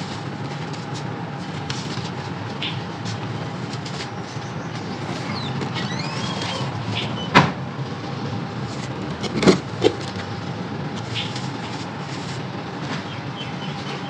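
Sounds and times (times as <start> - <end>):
bird chirps: 13.1 - 14.0.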